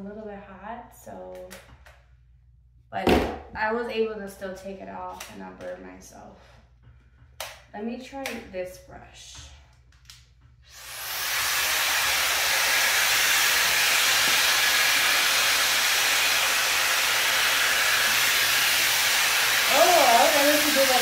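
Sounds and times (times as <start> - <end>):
blow-dryer brush airflow hiss: 10.7 - 21.0.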